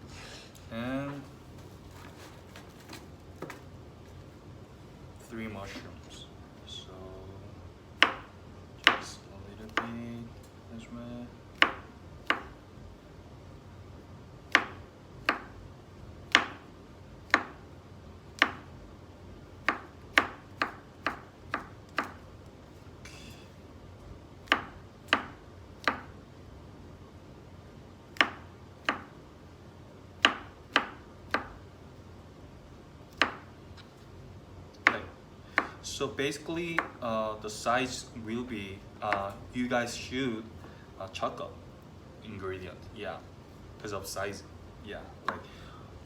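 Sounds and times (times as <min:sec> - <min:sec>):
knife chopping on cutting board: 0:08.0 - 0:09.1, 0:09.7 - 0:10.0, 0:11.6 - 0:12.6, 0:14.5 - 0:15.6, 0:16.3 - 0:16.6, 0:17.3 - 0:17.6, 0:18.4 - 0:18.7, 0:19.6 - 0:22.2, 0:24.4 - 0:26.1, 0:28.2 - 0:29.1, 0:30.2 - 0:31.6, 0:33.1 - 0:33.5, 0:34.8 - 0:35.8, 0:39.1 - 0:39.4, 0:45.2 - 0:45.5.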